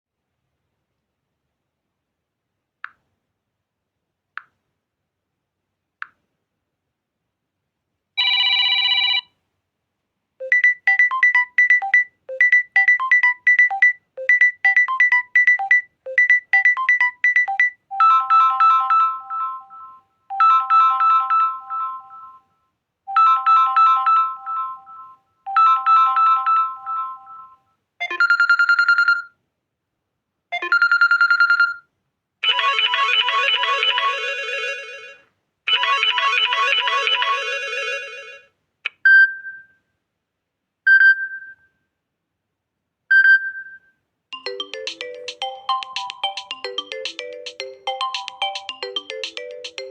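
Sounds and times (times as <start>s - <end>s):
ringtone melodies: 10.4s - 22.5s, 23.1s - 29.2s, 32.4s - 38.4s, 44.4s - 49.9s.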